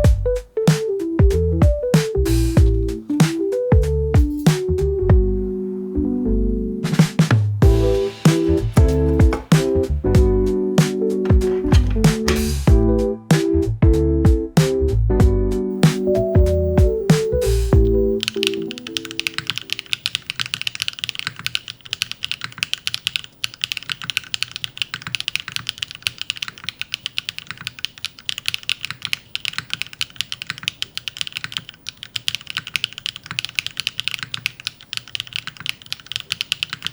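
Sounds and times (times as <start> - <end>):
music: 0.0 - 19.3
mechanical keyboard typing: 10.8 - 12.5, 15.8 - 36.9.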